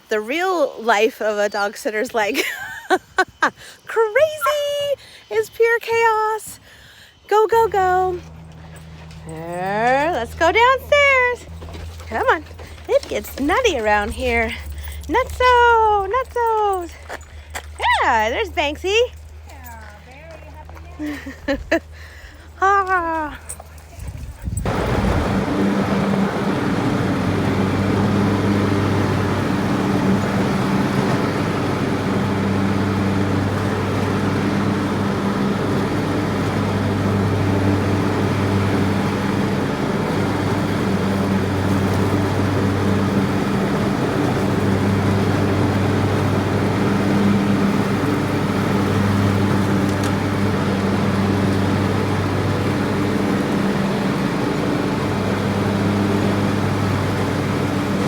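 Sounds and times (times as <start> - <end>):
low mechanical drone: 24.4 - 58.0.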